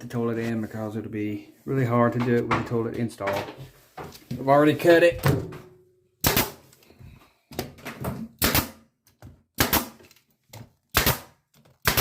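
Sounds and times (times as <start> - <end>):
nail gun shots: 6.2 - 6.6, 8.4 - 8.8, 9.6 - 10.0, 10.9 - 12.0.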